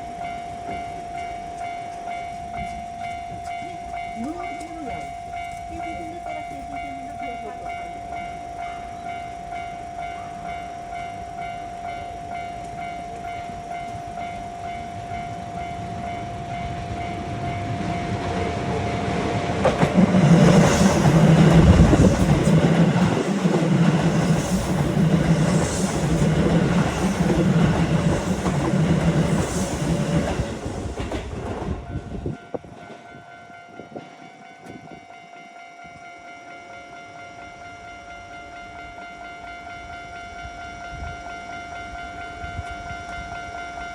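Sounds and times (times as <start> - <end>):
level crossing warning bell: 0.0 - 31.1, 31.8 - 43.9
electric train passing: 0.0 - 43.9
wheels clacking over rail joints: 12.5 - 31.8.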